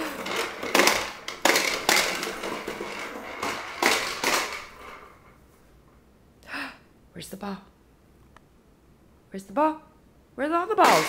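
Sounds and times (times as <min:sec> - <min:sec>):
hard toys clattering: 0:00.0 - 0:05.4, 0:10.8 - 0:11.0.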